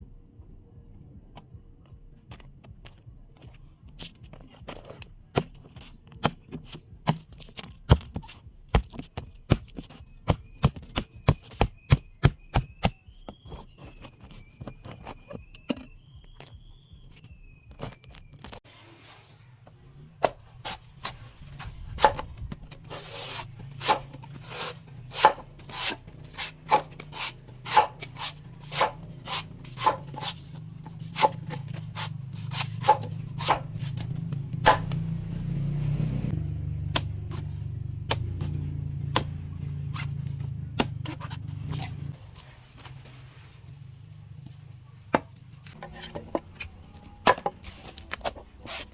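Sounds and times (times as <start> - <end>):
blade chopping coconut husk: 4.0 - 15.8, 20.2 - 43.4, 44.4 - 48.9
low hum: 19.5 - 48.0.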